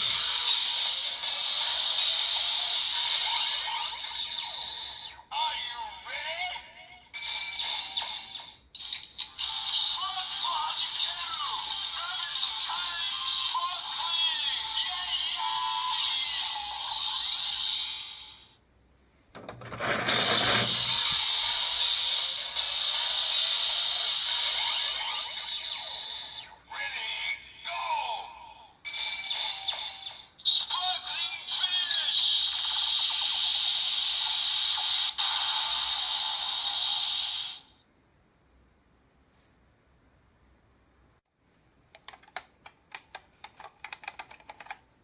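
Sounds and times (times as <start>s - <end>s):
toy electronic sound effects: 7.2s - 18.5s, 19.8s - 27.3s, 28.9s - 37.8s
electronic toy hiss: 20.9s - 26.3s, 32.0s - 37.8s
clicks: 41.9s - 44.9s.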